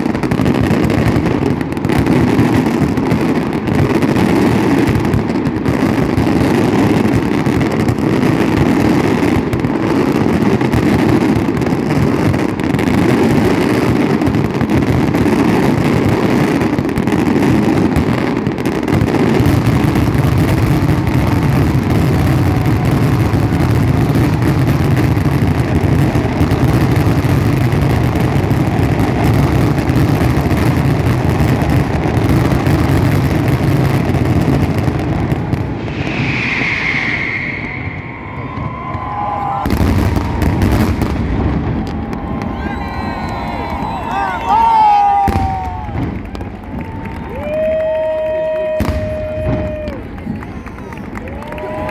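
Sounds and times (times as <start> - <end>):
fireworks barrage rumbling: 0.0 - 51.9.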